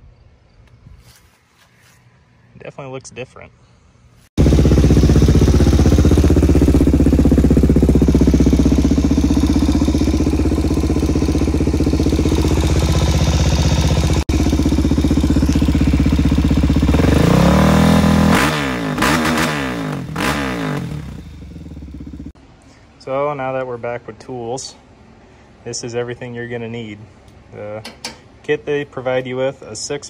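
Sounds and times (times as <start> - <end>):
dirt bike engine running: 4.4 - 22.4.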